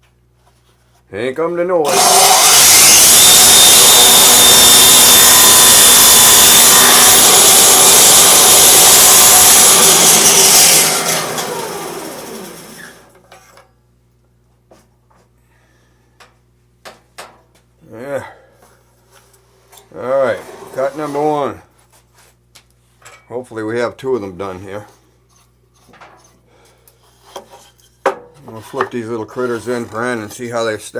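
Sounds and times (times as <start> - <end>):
saw blade spinning down: 1.8 - 13.2
table saw cutting plywood: 1.9 - 13.1, 20.0 - 21.4.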